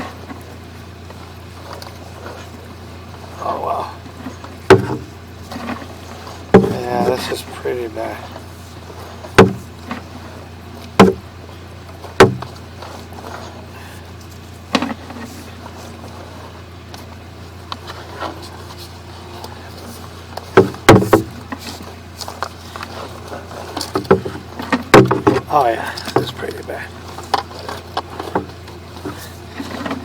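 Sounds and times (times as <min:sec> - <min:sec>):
steady low hum: 0:00.0 - 0:30.0
cable knocking and clattering in pipe: 0:23.8 - 0:26.4.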